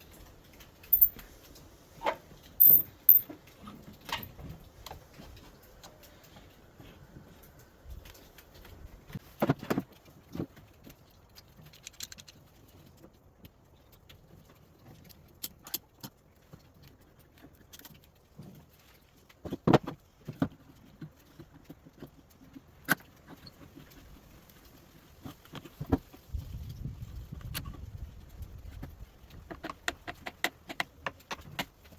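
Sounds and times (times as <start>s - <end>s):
wooden parts knocking and clicking: 0.9s - 1.2s.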